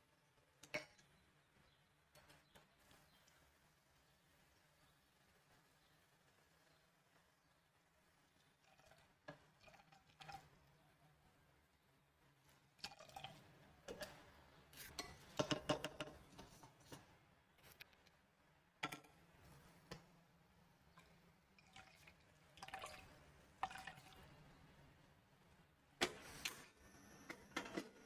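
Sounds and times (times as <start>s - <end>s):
liquid dripping into container: 21.0s - 24.2s.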